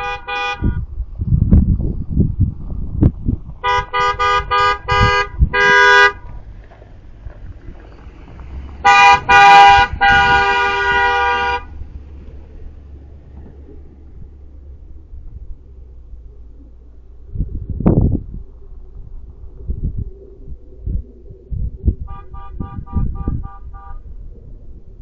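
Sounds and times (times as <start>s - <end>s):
car horns honking: 0.0s - 0.8s, 3.6s - 6.4s, 8.8s - 12.0s, 22.0s - 24.1s.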